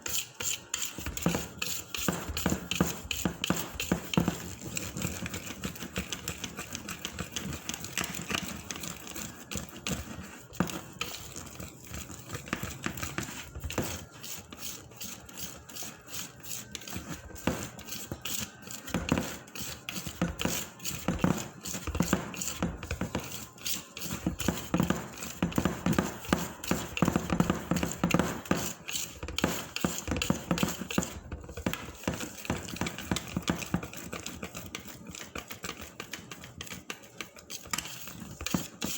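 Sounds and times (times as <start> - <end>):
batter beaten in a bowl: 0.0 - 38.9.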